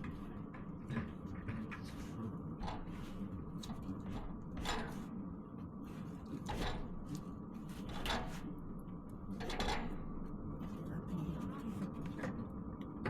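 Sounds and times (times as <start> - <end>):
clunks and scrapes of tools: 0.0 - 5.1, 5.9 - 8.6, 9.3 - 10.2
diesel heater humming: 0.0 - 13.0.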